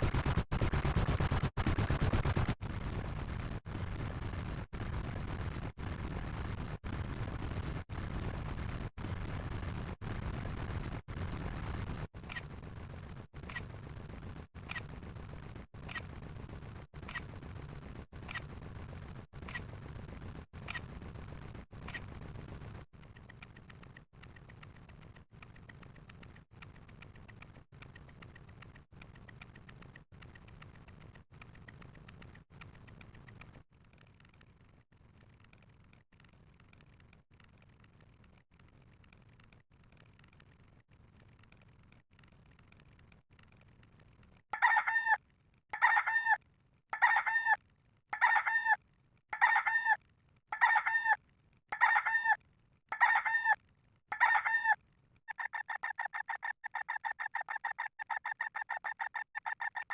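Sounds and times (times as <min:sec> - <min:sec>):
fast ticking: 0:23.0 - 0:44.6, 0:54.8 - 0:59.9.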